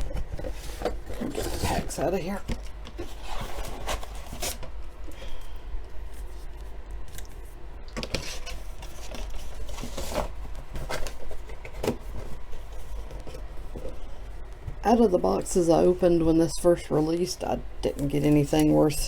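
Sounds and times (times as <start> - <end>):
foil wrappers rustling: 0.0 - 7.4
steady low hum: 0.0 - 19.0.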